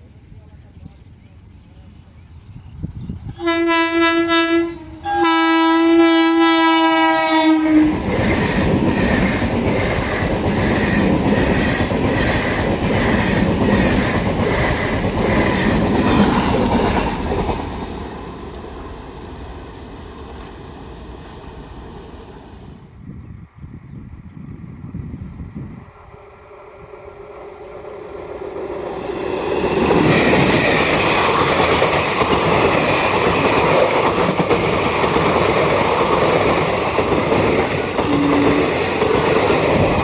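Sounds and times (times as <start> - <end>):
locomotive horn blasts: 3.4 - 7.9, 38.0 - 38.8
train wheels clattering: 26.5 - 40.0.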